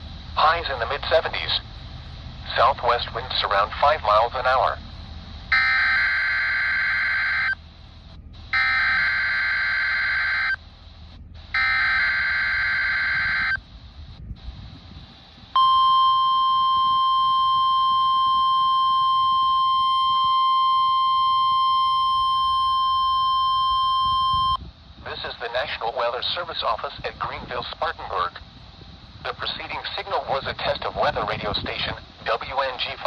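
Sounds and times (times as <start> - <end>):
low radio static hiss: 0.0 - 33.0
steady warning alarm tone: 0.2 - 14.1, 15.1 - 24.6
warbling digital data screeches: 5.5 - 7.6, 8.6 - 10.6, 11.6 - 13.6.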